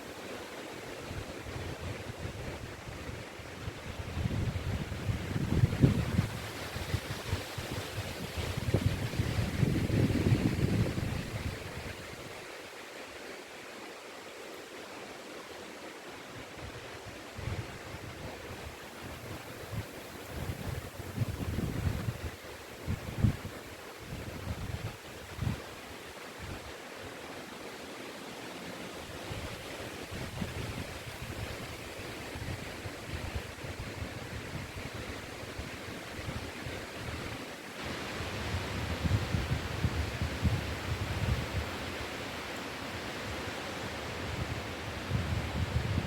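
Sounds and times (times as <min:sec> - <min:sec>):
wind rushing through trees: 0:00.0 - 0:46.0
wind buffeting on microphone: 0:01.4 - 0:12.3, 0:16.7 - 0:25.7, 0:29.3 - 0:42.1, 0:44.0 - 0:46.0.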